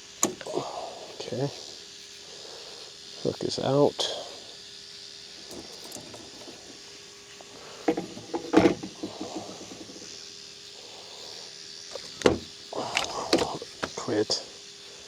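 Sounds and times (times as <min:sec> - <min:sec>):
fish thrashing knocks and scuffs: 0:11.9 - 0:14.0.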